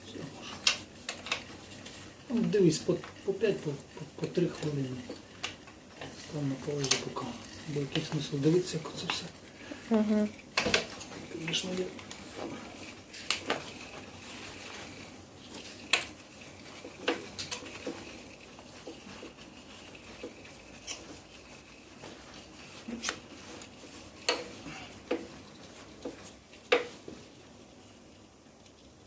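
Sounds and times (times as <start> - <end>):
hand tools clicking and tapping: 22.8 - 27.2.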